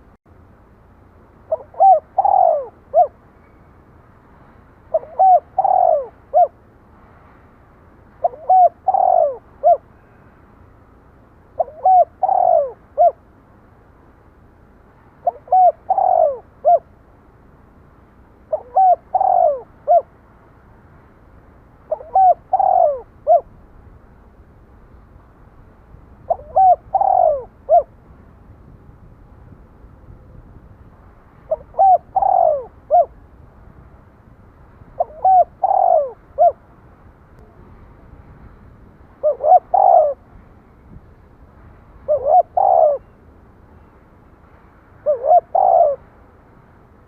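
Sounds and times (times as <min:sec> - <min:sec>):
dove cooing: 0:01.5 - 0:03.2, 0:04.9 - 0:06.6, 0:08.2 - 0:09.9, 0:11.6 - 0:13.2, 0:15.2 - 0:16.9, 0:18.5 - 0:20.1, 0:21.9 - 0:23.5, 0:26.3 - 0:27.9, 0:31.5 - 0:33.2, 0:35.0 - 0:36.6, 0:39.2 - 0:40.2, 0:42.1 - 0:43.2, 0:45.0 - 0:46.0.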